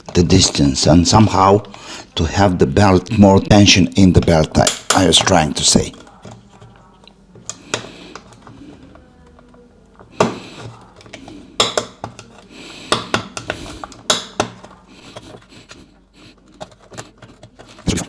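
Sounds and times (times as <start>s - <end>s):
hand tool scraping plastic: 10.0s - 18.0s.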